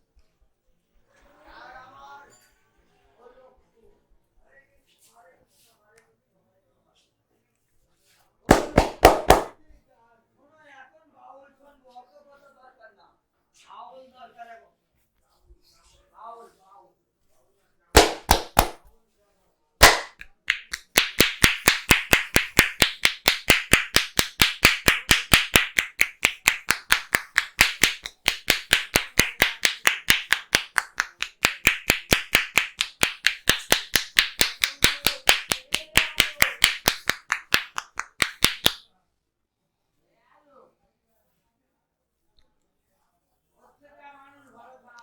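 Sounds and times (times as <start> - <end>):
hands clapping and slapping: 8.5 - 9.6, 18.0 - 18.9, 19.8 - 38.8.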